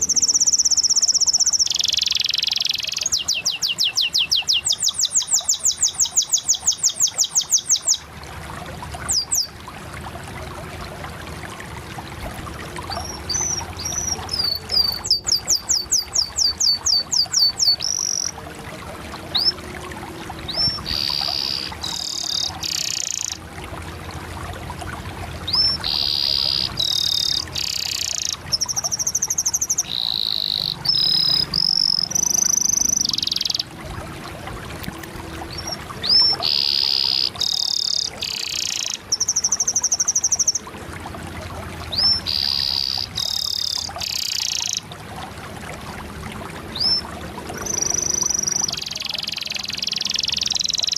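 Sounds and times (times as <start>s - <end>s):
canary singing: 0.0s - 8.0s, 12.9s - 18.3s, 20.5s - 23.4s, 25.5s - 33.7s, 35.5s - 39.5s, 41.9s - 44.8s.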